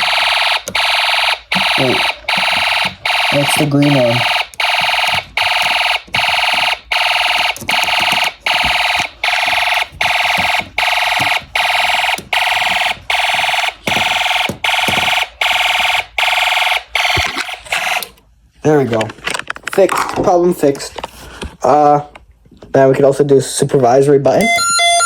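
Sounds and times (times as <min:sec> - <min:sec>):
fire alarm buzzy blasts: 0:00.0 - 0:18.1, 0:24.4 - 0:25.0.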